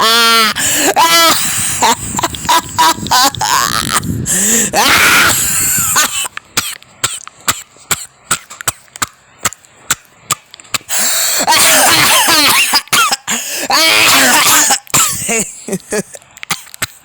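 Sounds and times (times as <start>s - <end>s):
person laughing: 0.0s - 6.3s, 13.3s - 16.3s.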